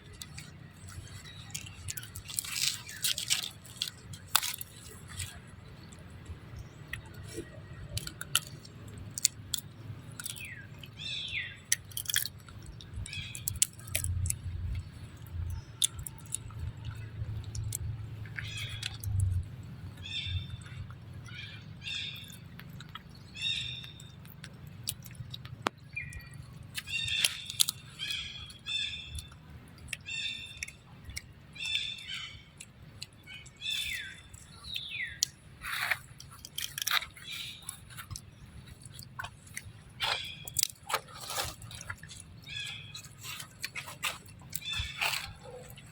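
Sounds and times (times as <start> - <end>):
chewing: 0.0 - 45.9.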